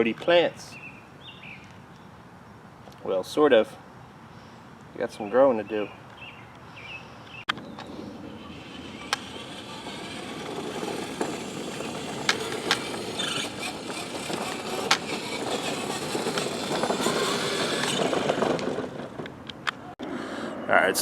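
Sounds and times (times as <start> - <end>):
plastic wheels rolling: 7.6 - 19.9
toy car electric motor: 8.3 - 19.2.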